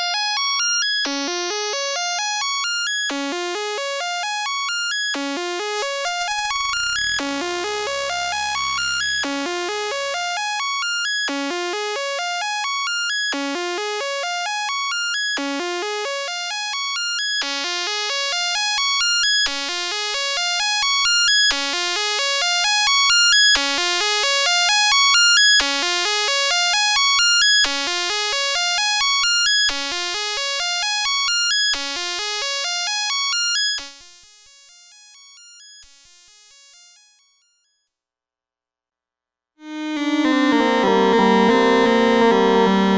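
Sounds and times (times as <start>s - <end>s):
low held synthesizer note: 5.8s - 10.0s, 39.6s - 42.9s
buzzy synthesizer note phrase: 5.8s - 10.2s, 39.6s - 42.9s.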